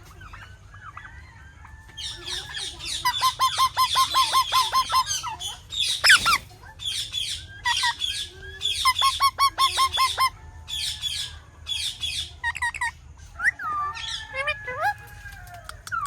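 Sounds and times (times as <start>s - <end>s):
busy higher chirping: 2.0s - 14.8s
parakeets calling harsh chirps: 2.0s - 14.8s.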